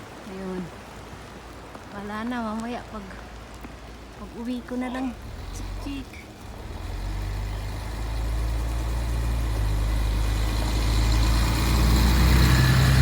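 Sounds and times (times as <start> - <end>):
vehicle engine rumbling: 4.4 - 13.0.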